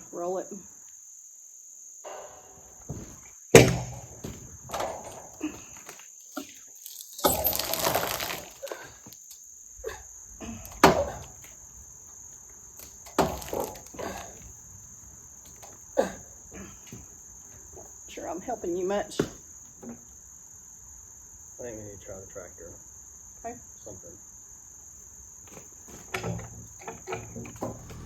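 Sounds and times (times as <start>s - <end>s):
crickets trilling: 0.0s - 28.0s
heavy knocks on log: 2.9s - 5.3s, 25.9s - 28.0s
log scraping: 6.4s - 9.0s, 12.4s - 18.0s, 25.5s - 28.0s.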